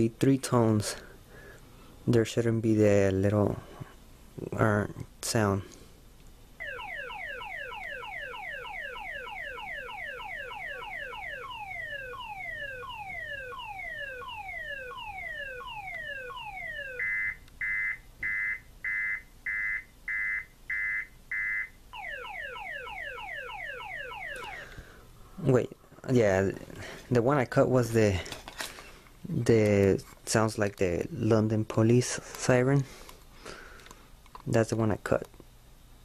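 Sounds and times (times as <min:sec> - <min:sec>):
car alarm siren: 0:06.6 - 0:24.8.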